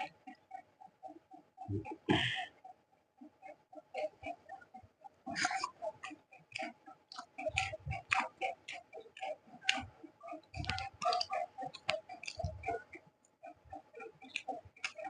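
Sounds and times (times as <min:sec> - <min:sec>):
wet lip smacks and chewing: 0:10.7 - 0:12.5.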